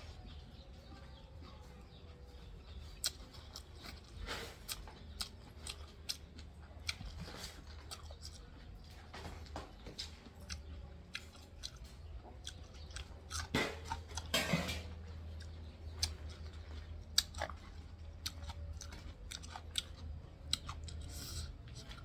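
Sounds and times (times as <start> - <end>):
person chewing food: 0.1 - 22.0.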